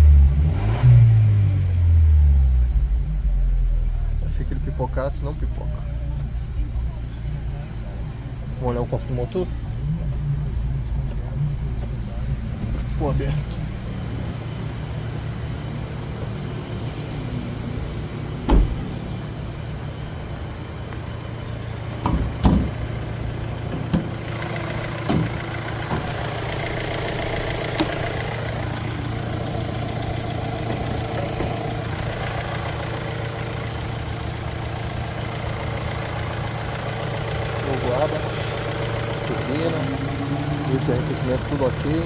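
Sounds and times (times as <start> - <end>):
car engine idling: 0.0 - 42.0
knocks and clunks: 18.4 - 18.9, 22.0 - 22.8, 23.7 - 24.2, 25.0 - 26.2, 30.6 - 31.8.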